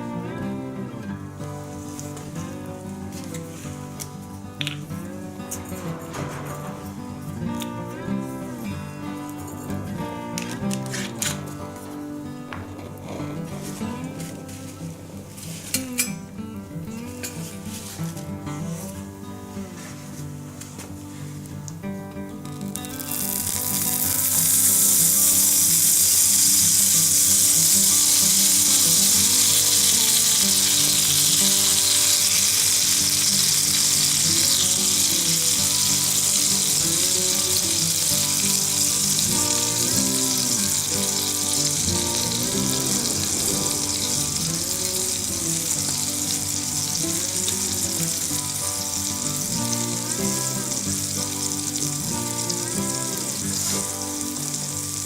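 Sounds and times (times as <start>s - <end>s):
fish sizzling in a skillet: 1.5s - 12.1s, 22.7s - 55.0s.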